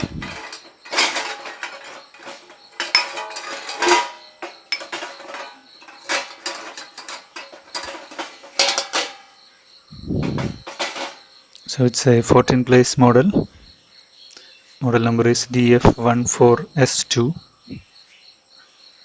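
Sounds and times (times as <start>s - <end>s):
low rumble: 0.0s - 0.4s, 10.0s - 10.6s
dishes and cutlery clinking: 0.0s - 9.5s, 10.2s - 11.3s.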